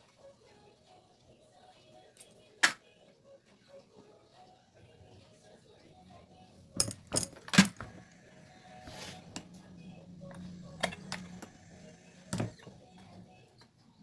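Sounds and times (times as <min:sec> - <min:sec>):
metal parts and tools clinking: 0:06.7 - 0:08.1, 0:10.3 - 0:12.8.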